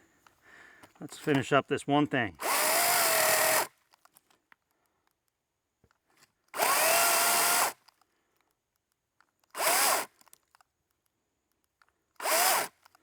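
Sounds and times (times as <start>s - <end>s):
chainsaw motor whining in bursts: 2.4s - 3.7s, 6.5s - 7.8s, 9.5s - 10.2s, 12.2s - 12.8s.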